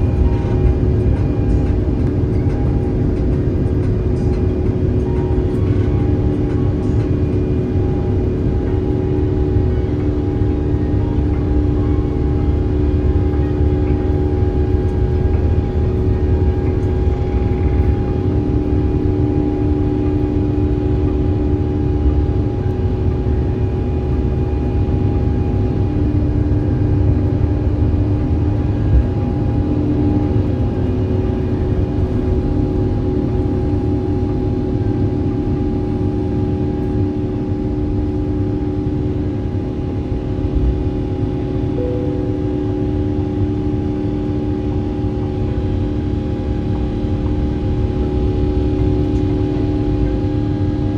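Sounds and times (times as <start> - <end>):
aircraft cabin engine hum: 0.0 - 50.9.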